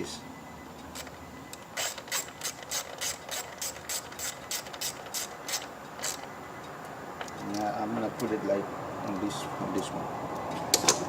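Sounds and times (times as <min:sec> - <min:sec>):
ratchet wrench clicking: 0:01.8 - 0:06.2.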